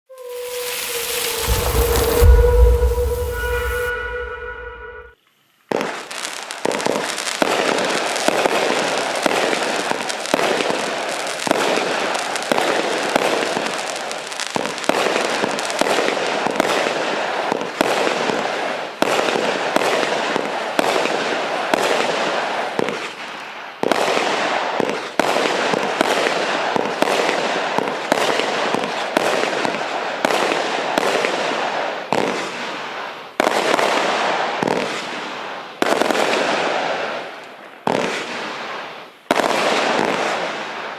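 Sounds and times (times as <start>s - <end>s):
firework barrage: 0.1s - 5.1s.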